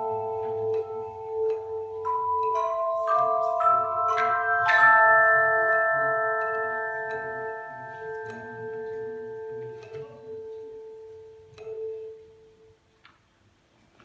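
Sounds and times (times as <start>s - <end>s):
handbells ringing: 0.0s - 10.1s.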